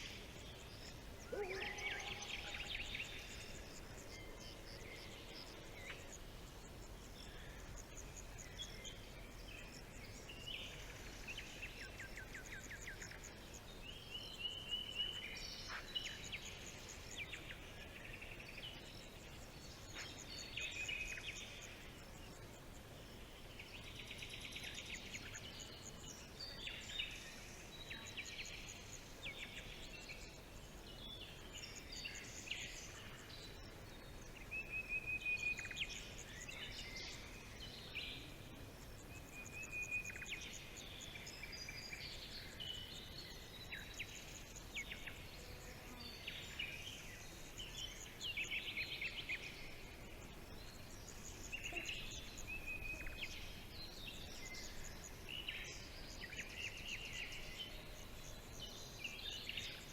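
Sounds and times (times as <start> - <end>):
faint background hiss: 0.0 - 59.9
songbirds singing and calling: 0.0 - 59.9.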